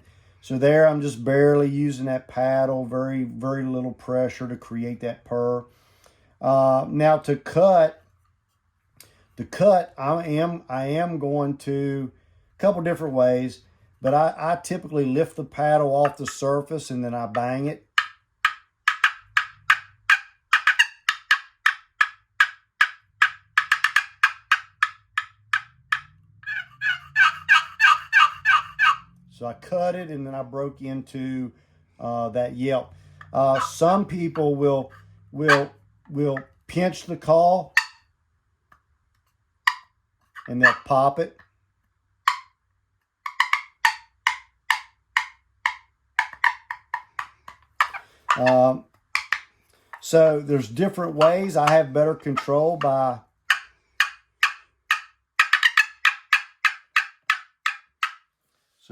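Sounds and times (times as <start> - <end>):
turkey box call notes: 17.2 - 38.1, 39.6 - 41.6, 42.2 - 42.6, 43.2 - 58.2.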